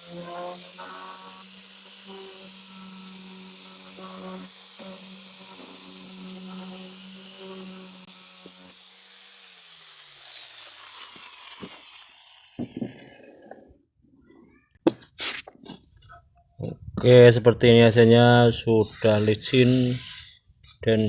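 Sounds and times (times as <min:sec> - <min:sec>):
power sander sanding wood: 0:00.0 - 0:13.8, 0:17.7 - 0:21.0
knocks: 0:12.6 - 0:13.0.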